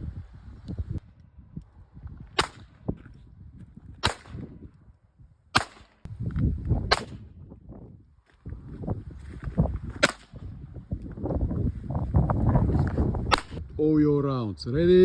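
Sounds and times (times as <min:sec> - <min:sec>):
gunshots: 0:02.4 - 0:02.8, 0:04.0 - 0:04.5, 0:05.6 - 0:06.1, 0:06.9 - 0:07.2, 0:10.0 - 0:10.4.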